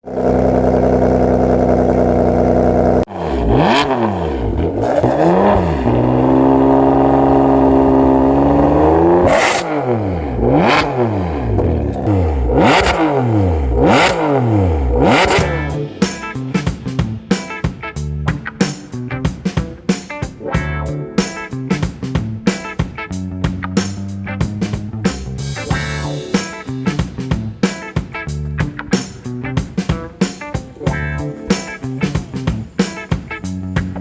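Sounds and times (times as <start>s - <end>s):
car engine revving: 0.1s - 17.3s.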